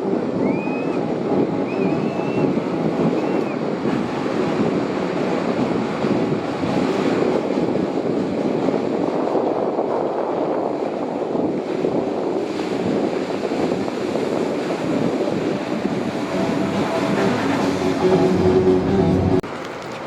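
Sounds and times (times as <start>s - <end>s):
breaking surf: 0.0s - 20.0s
wind on microphone: 0.0s - 20.0s
engine hum: 14.9s - 20.0s.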